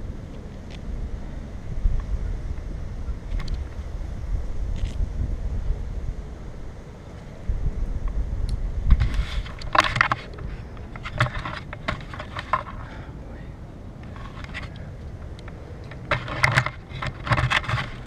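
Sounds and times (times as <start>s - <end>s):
wind rumbling on microphone: 0.0s - 18.0s
bike clicking and rattling: 8.1s - 13.1s, 14.0s - 18.0s.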